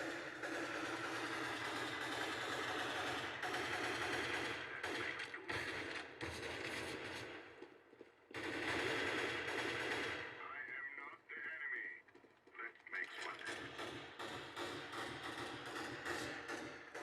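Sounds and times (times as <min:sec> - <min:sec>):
rapid gunfire: 0:00.0 - 0:11.6, 0:12.7 - 0:17.0.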